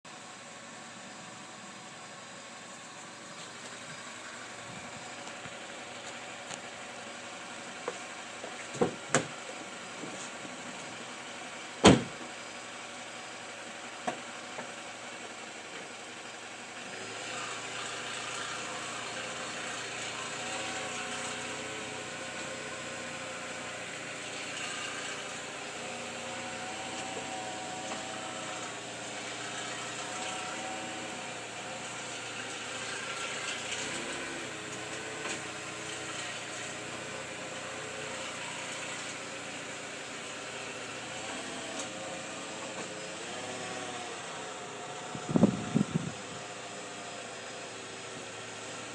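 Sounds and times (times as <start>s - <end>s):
car engine running: 0.0s - 48.9s
sharp engine knocks: 8.7s - 9.4s, 11.8s - 12.3s.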